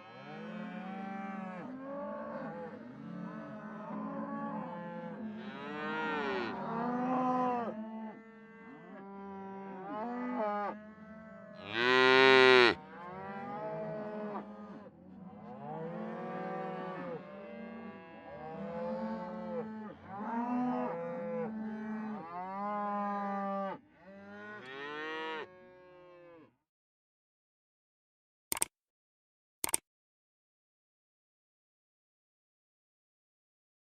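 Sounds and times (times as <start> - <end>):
cows mooing: 0.0 - 26.5.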